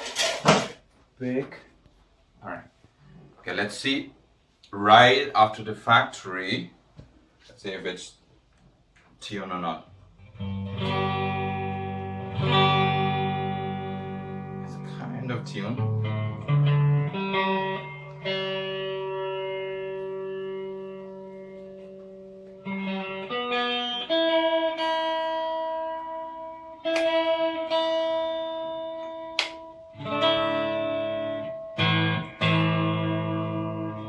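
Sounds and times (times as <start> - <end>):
electric guitar notes and chords: 10.0 - 34.0.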